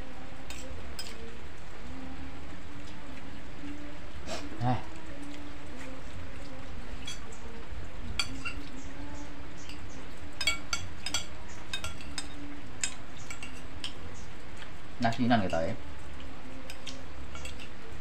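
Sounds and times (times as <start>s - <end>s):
cutlery clinking on a plate: 0.5s - 1.2s, 7.0s - 7.3s, 8.2s - 8.8s, 9.6s - 14.0s, 16.7s - 17.8s.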